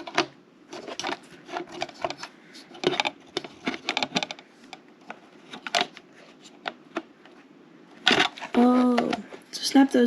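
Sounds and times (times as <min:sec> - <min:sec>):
plastic parts clicking and rattling: 0:00.0 - 0:09.4.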